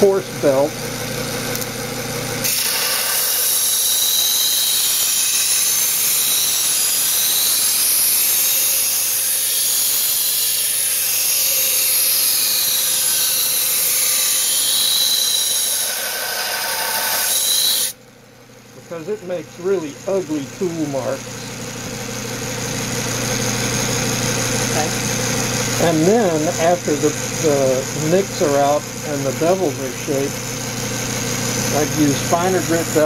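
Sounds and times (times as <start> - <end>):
motor running: 0.1 - 33.0
belt grinder grinding steel: 2.4 - 18.0.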